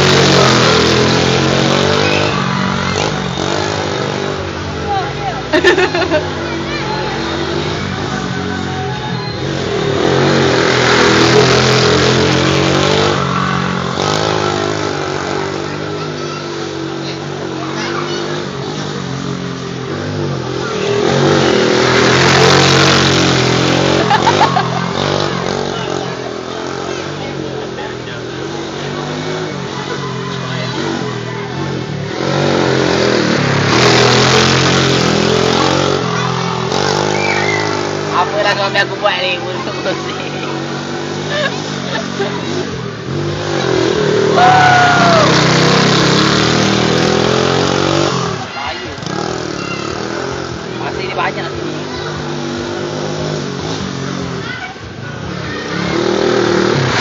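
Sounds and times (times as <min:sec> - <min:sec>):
quad bike engine revving: 0:00.0 - 0:57.0.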